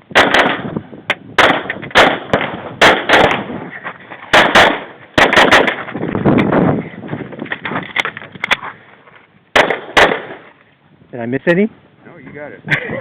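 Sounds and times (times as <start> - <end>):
pistol shots: 0.1 - 0.8, 1.4 - 3.5, 4.3 - 5.8, 9.6 - 10.4.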